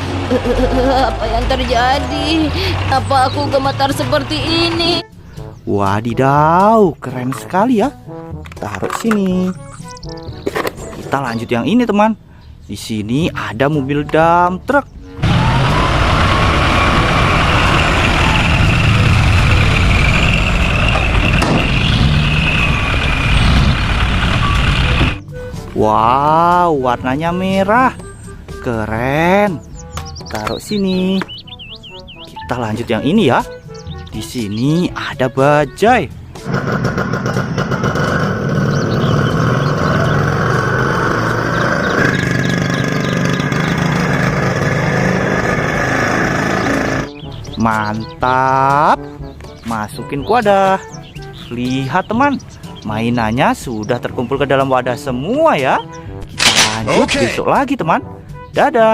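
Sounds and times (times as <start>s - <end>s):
heavy truck engine running: 0.0s - 5.0s, 15.2s - 25.6s, 36.2s - 47.6s.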